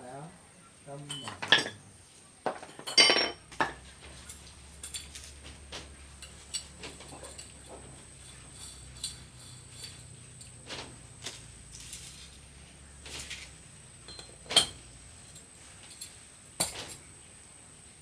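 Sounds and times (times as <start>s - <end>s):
tools and metal parts clicking: 2.7s - 5.4s, 6.2s - 10.6s, 14.1s - 17.0s.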